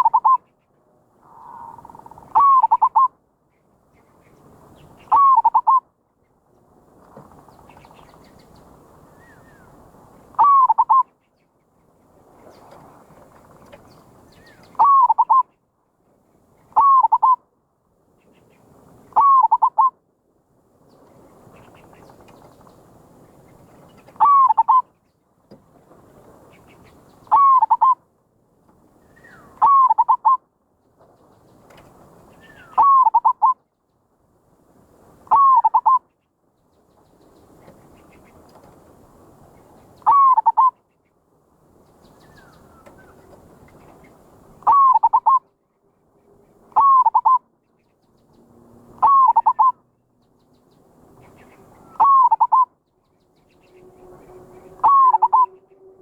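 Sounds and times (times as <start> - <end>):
dove cooing with rolling trill: 0.0 - 0.4, 1.2 - 3.2, 5.0 - 5.8, 10.3 - 11.1, 14.5 - 15.5, 16.7 - 17.4, 19.1 - 20.0, 24.0 - 24.9, 27.2 - 28.0, 29.3 - 30.4, 32.4 - 33.6, 35.3 - 36.0, 40.0 - 40.8, 44.6 - 45.5, 46.7 - 47.5, 48.9 - 49.8, 51.6 - 52.8, 53.6 - 56.0.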